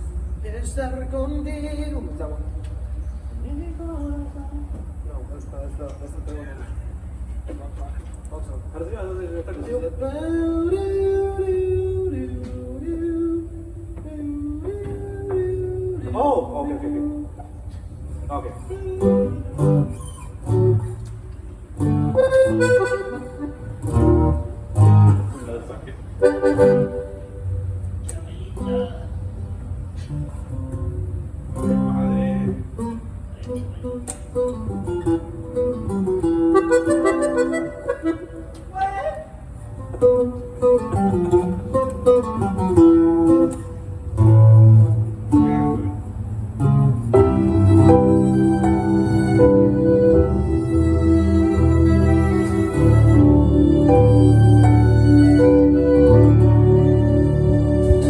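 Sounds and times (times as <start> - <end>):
guitar plucking a melody: 18.6 - 25.5, 26.2 - 38.8, 39.7 - 58.0
strong bass notes: 21.8 - 25.5, 46.6 - 58.0
instrumental band playing: 21.8 - 27.5, 33.5 - 38.8, 46.6 - 58.0.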